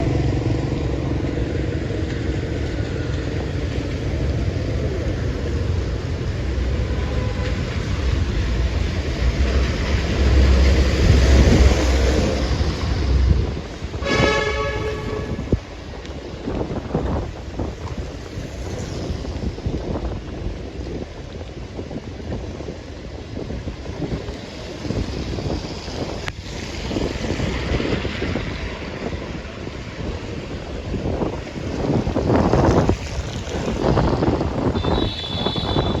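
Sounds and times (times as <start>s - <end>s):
large vehicle passing rumble: 0.0s - 20.7s, 24.3s - 36.0s
horn blast: 14.0s - 15.6s, 34.8s - 36.0s.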